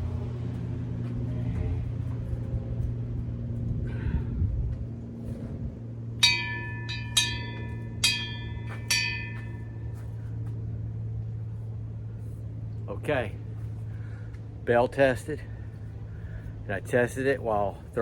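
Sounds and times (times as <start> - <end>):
steady low hum: 0.0 - 18.0
hanging bell ringing: 6.2 - 10.0.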